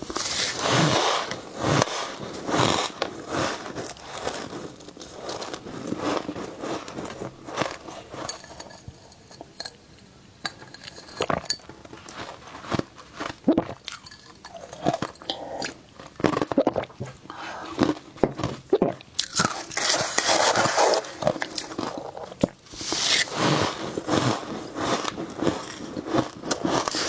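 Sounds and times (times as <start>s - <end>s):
biting and chewing frost: 0.0s - 8.4s, 12.0s - 27.0s.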